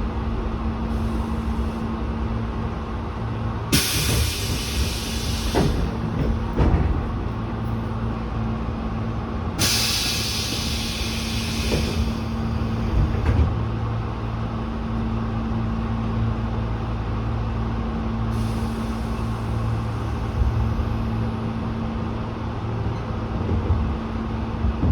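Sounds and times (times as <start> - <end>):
air brakes hissing: 3.7 - 6.3, 9.6 - 12.9, 18.3 - 20.2.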